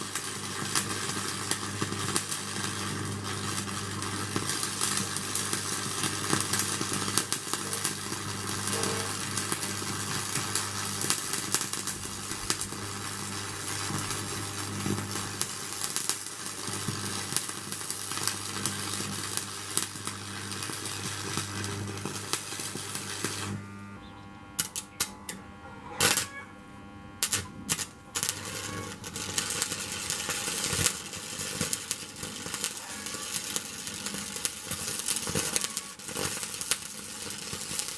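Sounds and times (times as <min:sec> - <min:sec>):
welding arc crackling: 0:00.0 - 0:37.9
low hum: 0:23.6 - 0:29.2.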